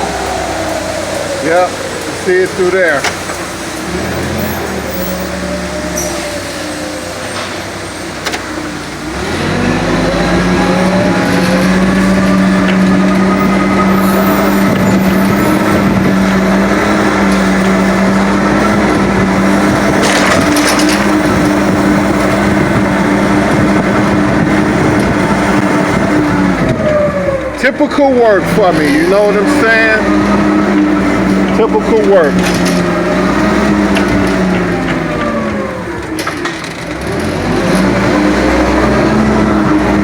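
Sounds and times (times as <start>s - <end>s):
forklift motor hum: 0.0s - 40.0s.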